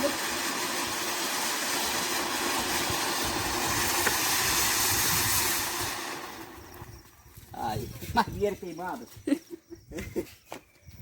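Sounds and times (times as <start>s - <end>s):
firework fountain hissing: 0.0s - 7.7s.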